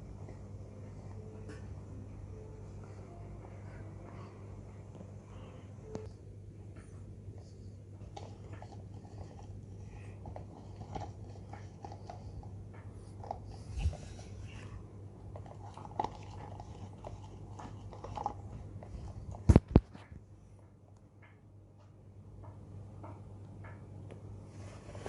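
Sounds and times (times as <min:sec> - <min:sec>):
ceiling fan motor humming: 0:00.0 - 0:25.0
small irregular clicks and crackles: 0:15.2 - 0:24.3.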